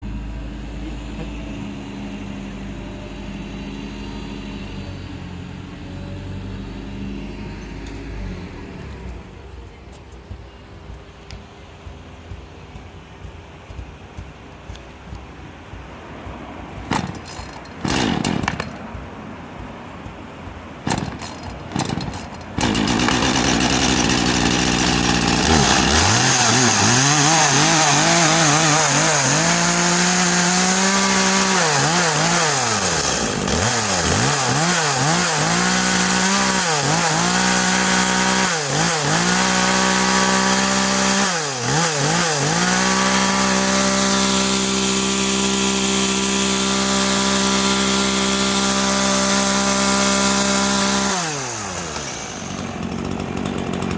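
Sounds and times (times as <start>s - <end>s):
chainsaw engine revving: 16.8s - 19.0s, 20.8s - 53.9s
starter cord pulls: 16.8s - 19.0s, 20.8s - 26.8s.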